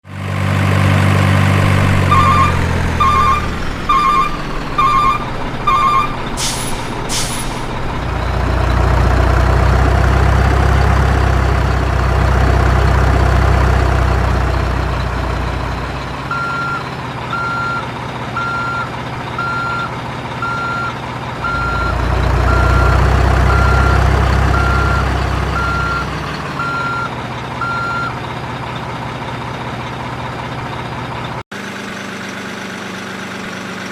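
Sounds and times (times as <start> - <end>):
diesel engine drone: 0.0 - 33.9
truck reversing alarm beeping: 1.7 - 10.9, 13.4 - 28.2.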